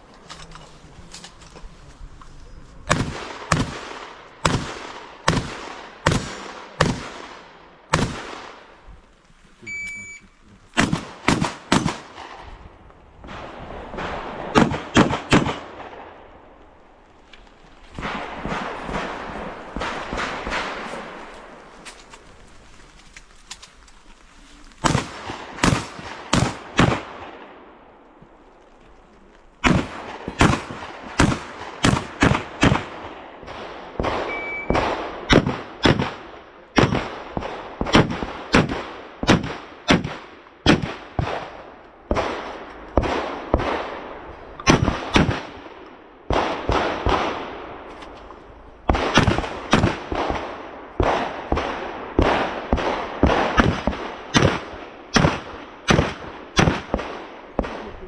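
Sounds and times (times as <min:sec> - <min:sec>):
shotgun shots: 0:02.9 - 0:08.8, 0:10.7 - 0:12.6, 0:13.2 - 0:16.4, 0:18.0 - 0:21.6, 0:24.8 - 0:27.7, 0:29.6 - 0:47.9, 0:48.9 - 0:58.0.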